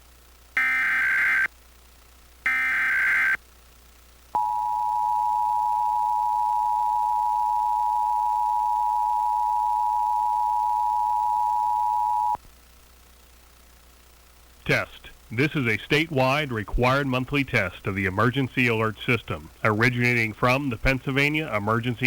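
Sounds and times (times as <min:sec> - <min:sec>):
two-tone attention signal: 0:04.4 - 0:12.4.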